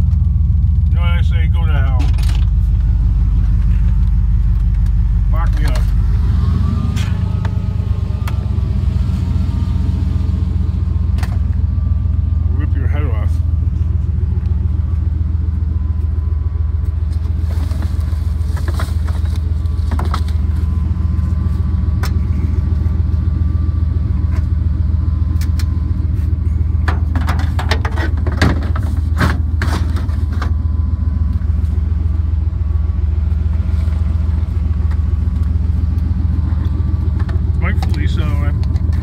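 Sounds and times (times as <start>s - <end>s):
vehicle engine and road drone: 0.0s - 39.0s
knocks and rattles: 17.2s - 20.6s, 26.7s - 30.6s.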